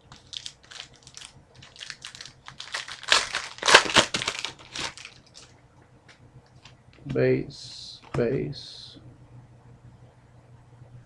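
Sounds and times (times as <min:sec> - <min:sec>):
card pack wrapper crinkling: 0:00.1 - 0:05.5.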